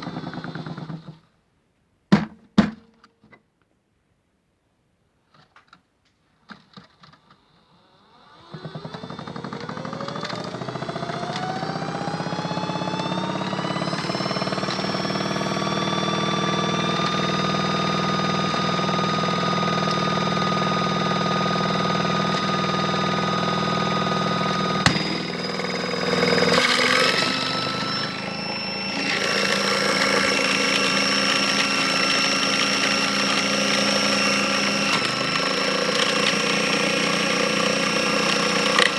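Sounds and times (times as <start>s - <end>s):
small electric motor whine: 7.4s - 38.9s
clicks: 24.4s - 38.9s.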